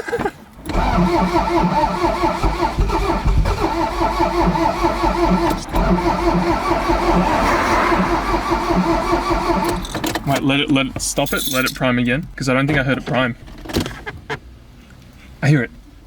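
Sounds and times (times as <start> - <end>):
car engine cranking on starter: 0.0 - 11.1.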